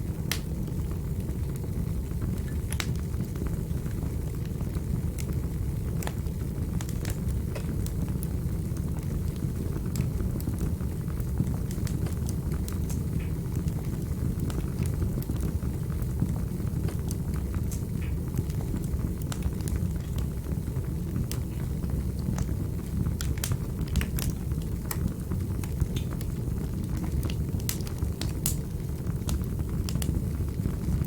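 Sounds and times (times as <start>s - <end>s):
wood fire crackling: 0.0s - 31.0s.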